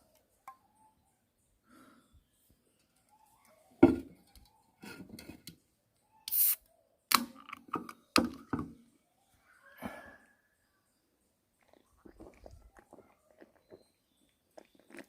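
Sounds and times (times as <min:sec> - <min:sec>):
short hiss: 0:06.3 - 0:06.6.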